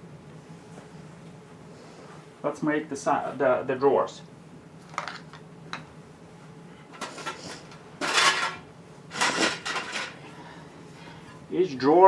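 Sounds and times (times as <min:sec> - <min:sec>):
sheet metal parts clattering: 0:07.0 - 0:10.2.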